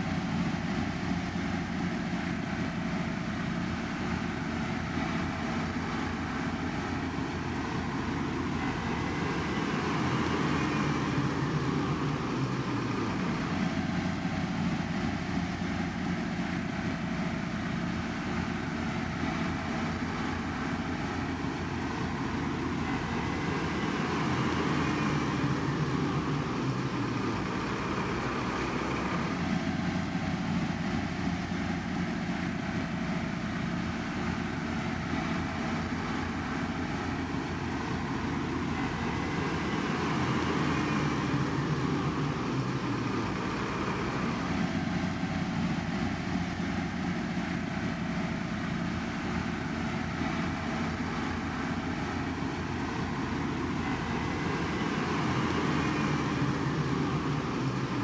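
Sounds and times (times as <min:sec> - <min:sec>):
heavy construction machinery engine: 0:00.0 - 0:58.0.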